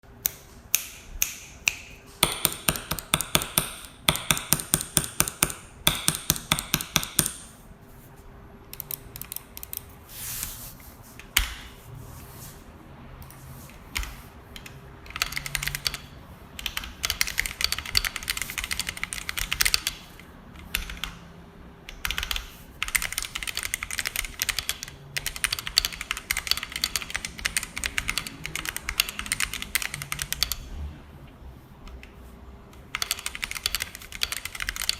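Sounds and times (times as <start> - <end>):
mechanical keyboard typing: 2.2 - 7.5, 8.7 - 10.0, 13.6 - 21.3, 21.9 - 30.7, 32.7 - 34.9.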